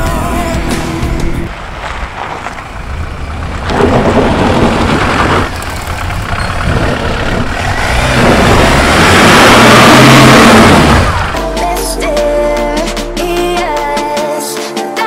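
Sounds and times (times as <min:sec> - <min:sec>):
off-road vehicle engine: 0:00.0 - 0:11.9.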